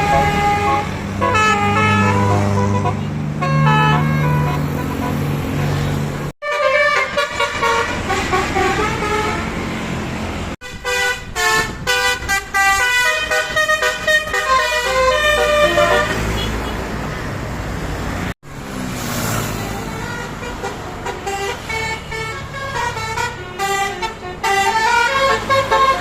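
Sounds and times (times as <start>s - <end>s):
bus horns playing melodic tones: 0.0s - 16.9s, 19.6s - 26.0s.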